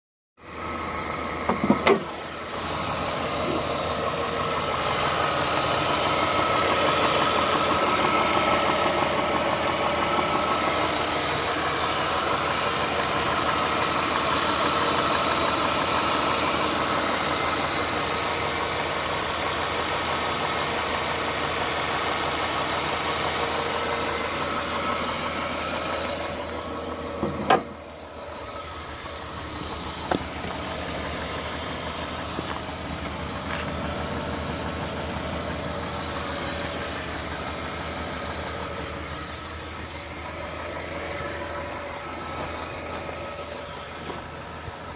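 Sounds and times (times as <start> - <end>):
car engine running with knocking: 0.4 - 44.9.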